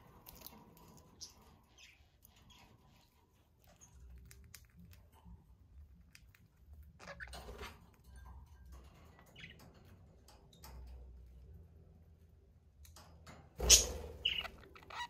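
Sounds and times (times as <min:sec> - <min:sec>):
budgerigars chirping: 0:13.6 - 0:15.0.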